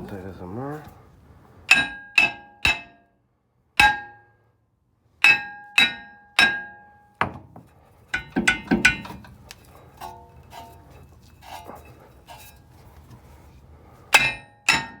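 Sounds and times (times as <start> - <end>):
hammer ringing on steel rotor: 1.7 - 3.1, 3.8 - 4.3, 5.2 - 7.1, 14.1 - 15.0
dull knock: 7.2 - 7.7
short metal clanks: 8.1 - 12.6.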